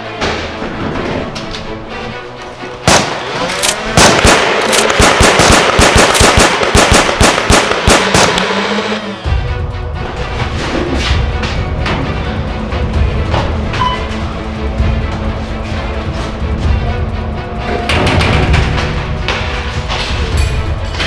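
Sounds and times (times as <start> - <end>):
action background music: 0.0 - 21.0
rapid gunfire: 2.8 - 9.2.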